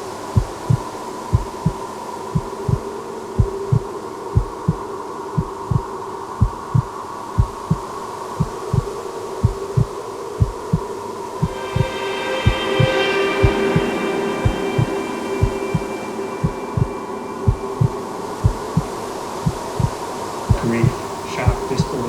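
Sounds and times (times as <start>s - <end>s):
heartbeat-like double thumps: 3.4s - 4.8s, 5.4s - 10.9s
steady held drone: 10.6s - 22.0s.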